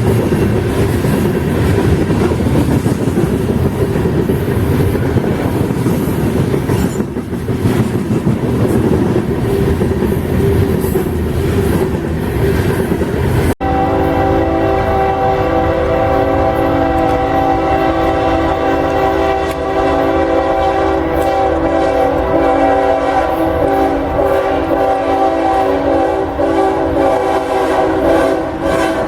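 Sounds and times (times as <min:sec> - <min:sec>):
train wheels clicking over rails: 0:00.0 - 0:13.5
locomotive air horn: 0:13.6 - 0:29.0.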